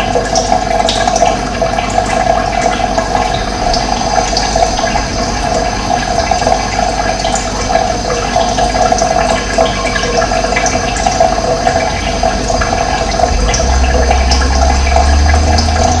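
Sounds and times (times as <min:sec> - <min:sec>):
running water: 0:00.0 - 0:16.0
low rumble: 0:12.6 - 0:16.0.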